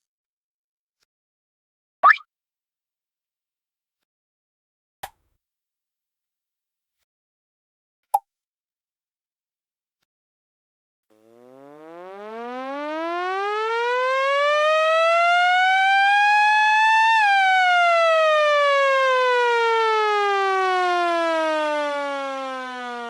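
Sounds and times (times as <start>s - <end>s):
siren-like rising and falling tone: 11.1s - 23.0s.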